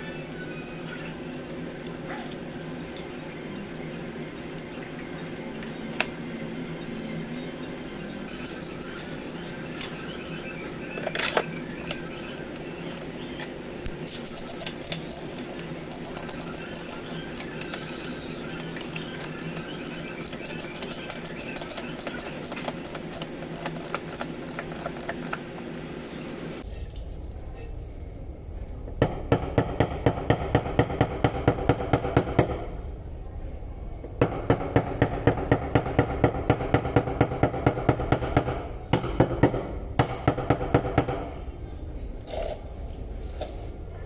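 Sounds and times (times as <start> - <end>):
steady mechanical hum: 0.0 - 44.0.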